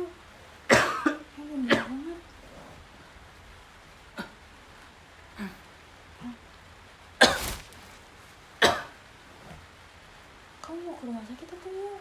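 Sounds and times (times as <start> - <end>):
man coughing hard: 0.7 - 1.2.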